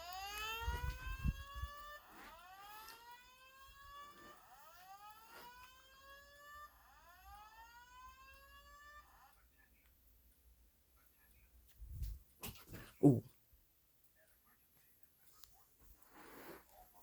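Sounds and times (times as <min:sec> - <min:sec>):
slow-whoop alarm tone: 0:00.0 - 0:09.3.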